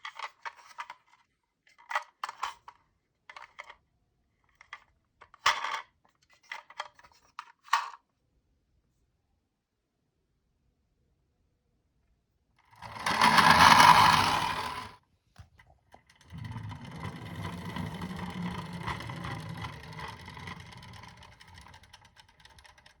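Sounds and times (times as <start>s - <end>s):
toy car motor whirring: 12.8s - 15.0s, 16.2s - 23.0s.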